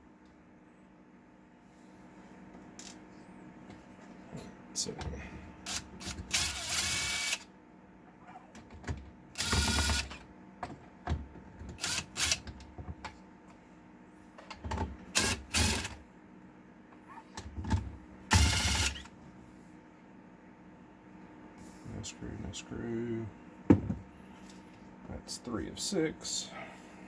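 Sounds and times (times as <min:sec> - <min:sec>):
electric screwdriver whirring: 0:05.7 - 0:07.4, 0:09.4 - 0:10.2, 0:11.8 - 0:12.4, 0:15.2 - 0:16.0, 0:18.3 - 0:19.1.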